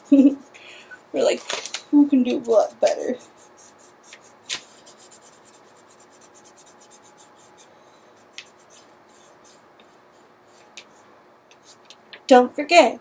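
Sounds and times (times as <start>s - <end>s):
drawing tool scratching on paper: 2.3s - 10.8s, 11.6s - 11.8s.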